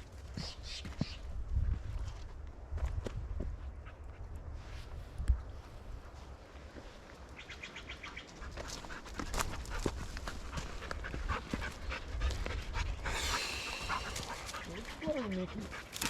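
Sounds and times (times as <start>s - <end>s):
wind rumbling on microphone: 1.2s - 6.7s, 8.4s - 16.0s
dog panting: 8.3s - 16.0s
rush of noise: 13.0s - 14.7s.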